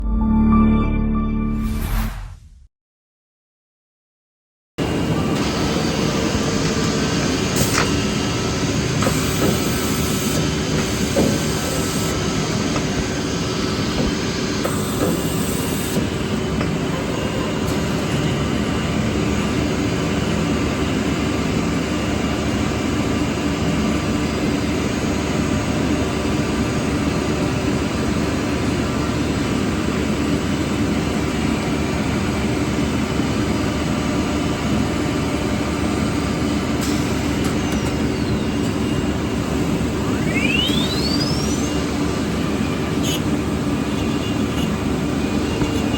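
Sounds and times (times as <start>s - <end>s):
drilling machine mechanical din: 4.9s - 18.4s, 36.8s - 45.9s.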